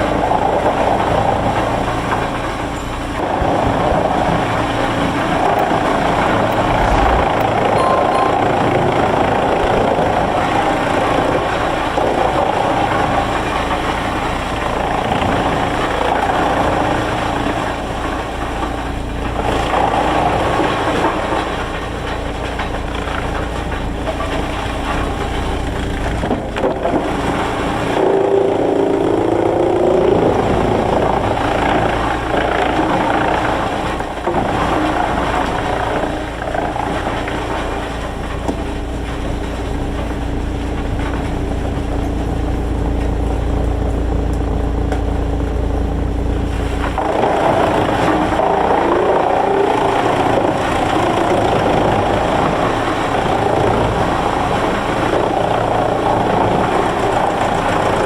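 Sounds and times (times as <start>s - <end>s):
wavering high tone: 6.5s - 9.9s
sawmill machinery running: 8.6s - 58.0s.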